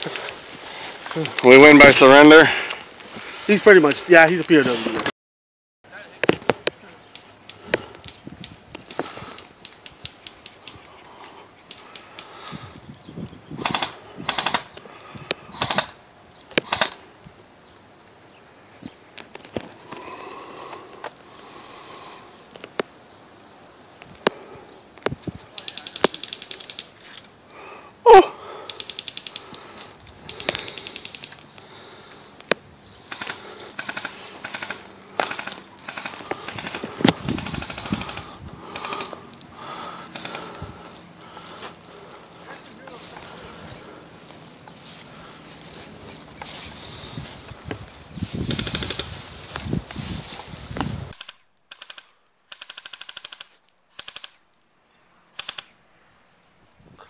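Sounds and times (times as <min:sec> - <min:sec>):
airsoft guns firing: 0:13.6 - 0:14.7, 0:15.6 - 0:16.0, 0:16.6 - 0:17.0, 0:33.1 - 0:39.2, 0:40.1 - 0:40.6.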